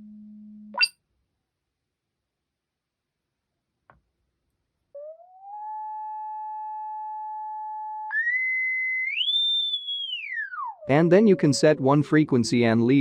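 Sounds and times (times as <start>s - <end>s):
sine tone gliding in pitch: 5.0s - 9.3s.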